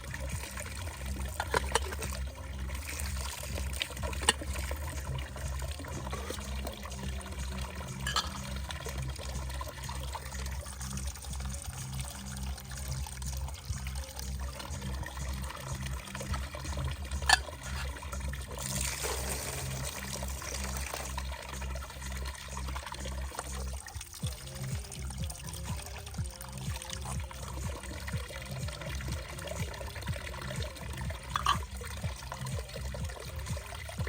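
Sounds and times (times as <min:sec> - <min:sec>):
running water rushing: 0:00.0 - 0:34.0
electronic dance music: 0:24.2 - 0:34.0.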